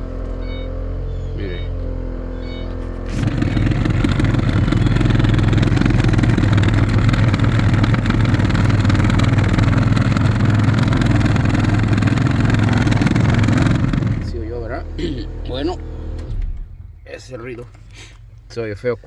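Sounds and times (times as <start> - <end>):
blower motor running roughly: 2.4 - 16.7.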